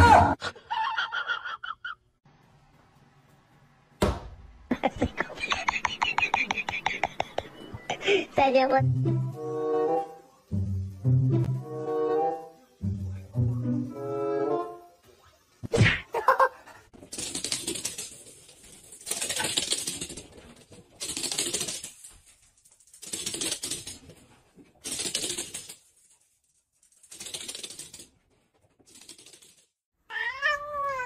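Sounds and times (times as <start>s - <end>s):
rapid dry clattering bursts: 17.0s - 29.7s.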